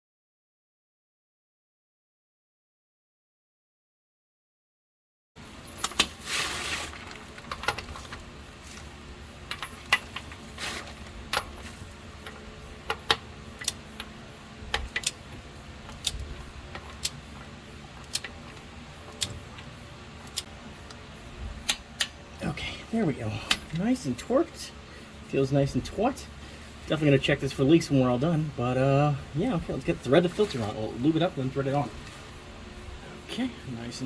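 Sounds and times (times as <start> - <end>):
socket wrench clicking: 12.3 - 15.2, 15.9 - 17.2, 18.0 - 21.0.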